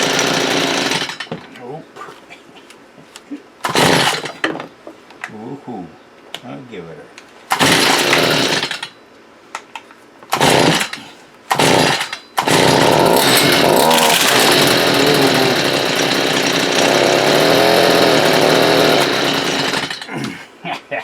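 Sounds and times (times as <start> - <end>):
string trimmer engine starting: 0.0 - 1.3, 3.6 - 4.4, 7.5 - 8.9, 10.3 - 20.4.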